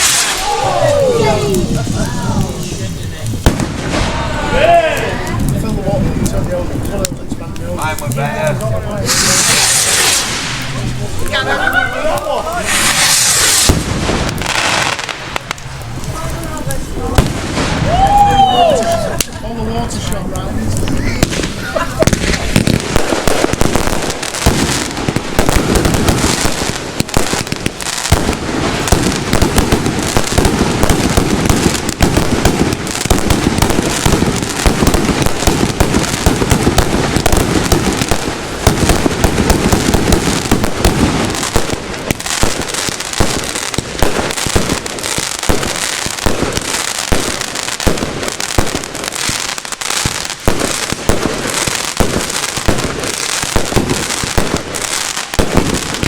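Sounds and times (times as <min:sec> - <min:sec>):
fireworks crackling and banging: 0:00.0 - 0:56.0.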